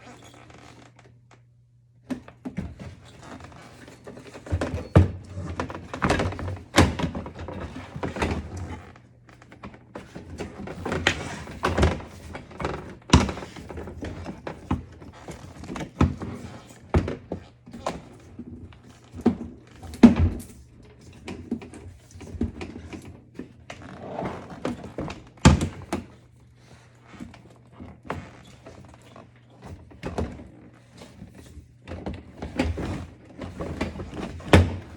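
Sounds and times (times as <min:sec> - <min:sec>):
knocks and clunks on dishwasher: 0:32.1 - 0:34.9.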